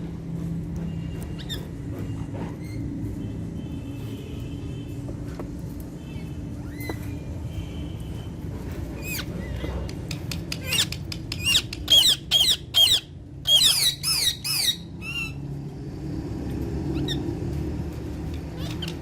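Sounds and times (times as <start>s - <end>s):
parrot harsh screeching calls: 11.5s - 15.4s.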